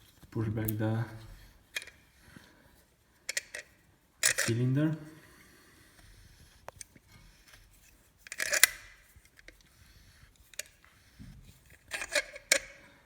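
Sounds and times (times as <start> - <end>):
metal clicking: 3.3 - 4.6
metal scraping: 3.3 - 9.2.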